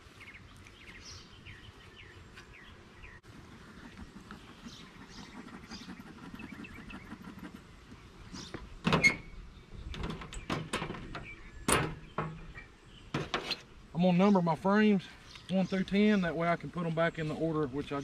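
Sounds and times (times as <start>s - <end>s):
wood knocking and scraping on wood: 10.0s - 13.6s.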